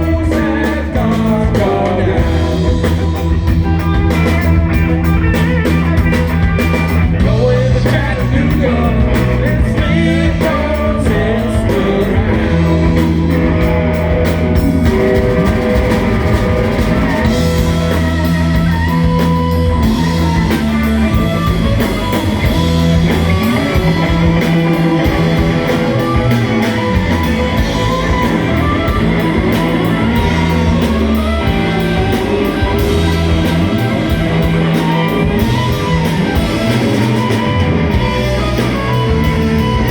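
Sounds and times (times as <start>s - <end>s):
person singing: 0.0s - 4.2s, 7.0s - 16.0s
bass guitar: 0.0s - 39.9s
drum kit: 0.0s - 39.9s
electric guitar: 0.0s - 39.9s.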